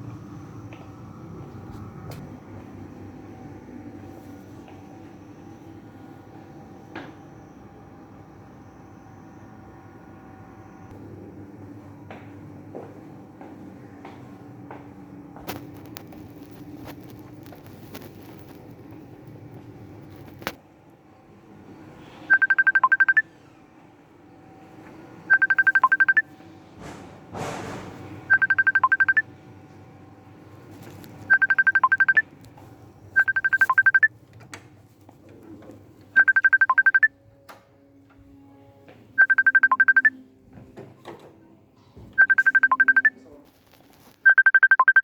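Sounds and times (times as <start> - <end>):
electronic trilling beeps: 22.3 - 23.2, 25.3 - 26.2, 28.3 - 29.2, 31.3 - 32.2, 33.2 - 34.1, 36.2 - 37.1, 39.2 - 40.2, 42.2 - 43.2, 44.2 - 45.0.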